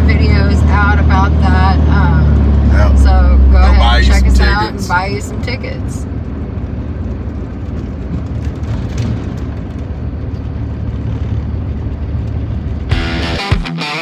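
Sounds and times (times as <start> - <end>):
vehicle rumbling on the road: 0.0 - 13.5
electric guitar rock music: 12.9 - 14.0.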